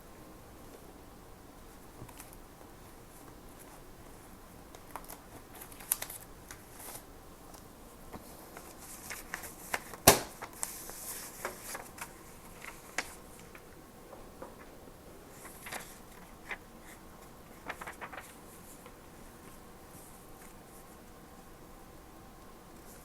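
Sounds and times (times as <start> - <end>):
paper rustling: 3.1 - 7.1, 8.2 - 21.1.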